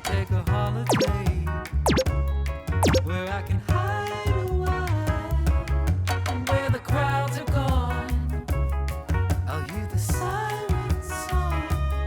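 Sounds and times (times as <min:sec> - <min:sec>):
upbeat dance music: 0:01.9 - 0:02.1.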